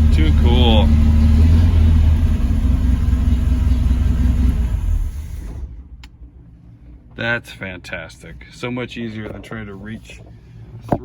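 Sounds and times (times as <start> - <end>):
car engine running: 0.0 - 6.2.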